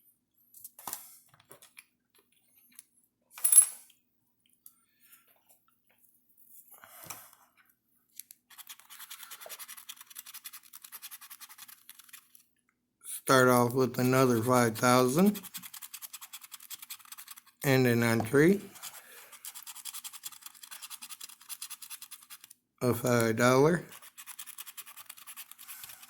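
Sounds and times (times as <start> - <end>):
scratching off lottery ticket: 8.4 - 12.4, 14.1 - 17.7, 18.3 - 22.6, 23.8 - 26.0.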